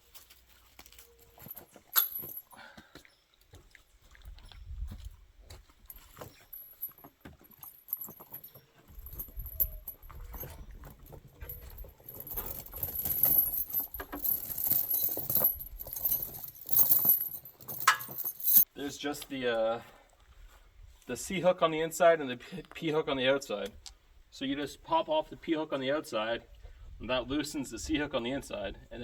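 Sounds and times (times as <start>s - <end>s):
tire chains clinking and jingling: 1.3s - 2.6s, 5.9s - 18.7s.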